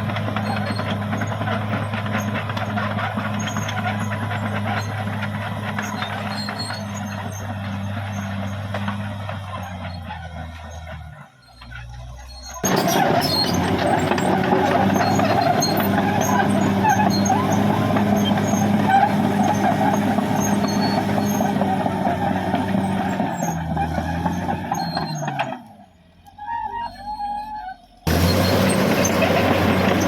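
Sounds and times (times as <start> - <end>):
bulldozer diesel engine: 0.0 - 30.0
dense noisy clatter: 12.6 - 23.2.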